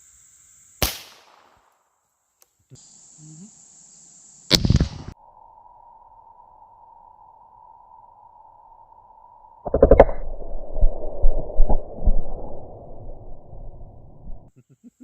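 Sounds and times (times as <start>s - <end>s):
rifle shot: 0.8s - 1.6s, 4.5s - 5.1s.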